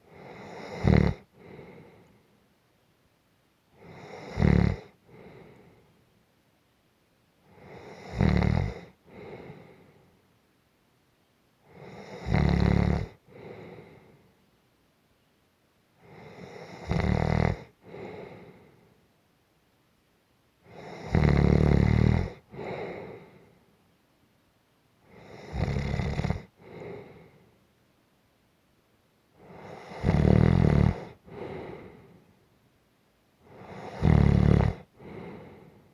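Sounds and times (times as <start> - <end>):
person snoring: 0.1 - 2.0, 3.8 - 5.5, 7.6 - 9.7, 11.7 - 13.8, 16.1 - 18.5, 20.7 - 23.3, 25.1 - 27.2, 29.4 - 32.1, 33.5 - 35.7.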